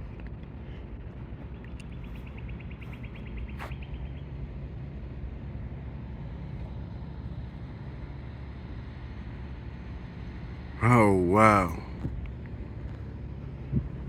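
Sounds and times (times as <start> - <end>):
distant engine rumble: 0.0 - 14.0.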